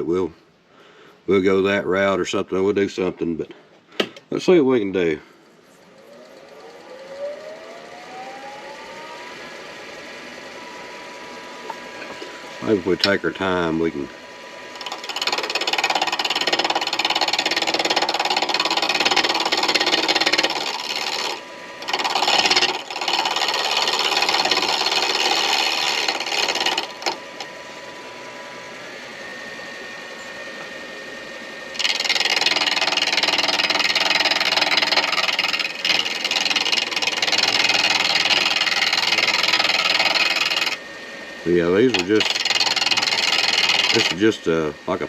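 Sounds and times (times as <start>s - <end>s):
lathe motor hum: 5.0s - 45.0s
turning tool scraping on lathe: 14.7s - 27.2s, 31.8s - 40.8s, 41.7s - 44.5s.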